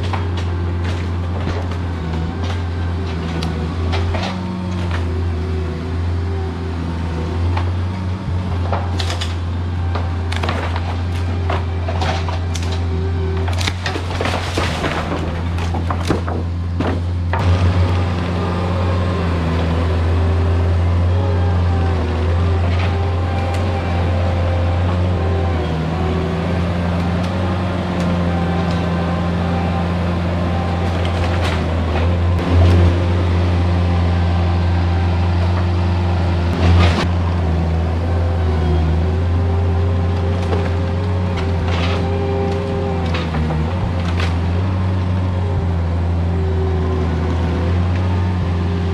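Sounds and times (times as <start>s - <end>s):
skid steer engine running: 0.0s - 48.9s.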